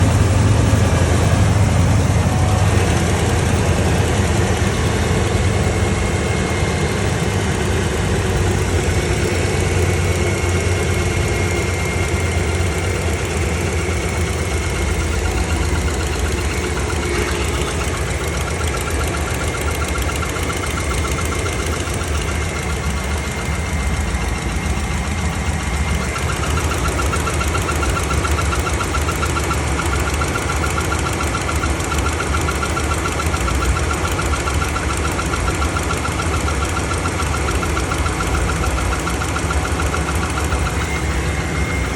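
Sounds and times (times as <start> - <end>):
pickup engine idling: 0.0 - 41.9
faint wavering tone: 40.6 - 41.9.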